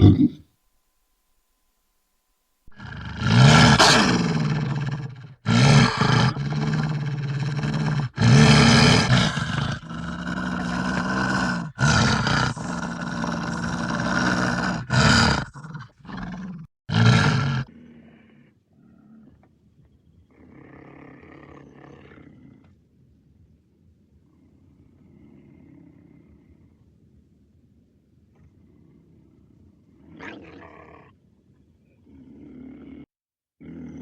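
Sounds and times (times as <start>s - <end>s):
big cat roaring: 0.0s - 0.4s, 2.7s - 19.4s, 32.0s - 34.0s.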